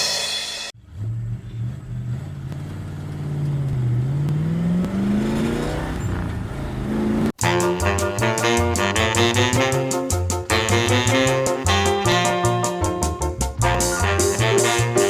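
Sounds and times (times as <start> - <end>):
upbeat latin-style music: 7.4 - 15.0.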